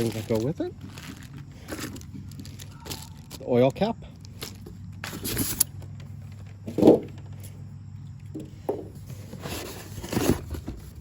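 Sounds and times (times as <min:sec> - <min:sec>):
packaging rustling: 0:00.0 - 0:03.4
steady low hum: 0:00.7 - 0:11.0
parts knocking: 0:08.3 - 0:09.1.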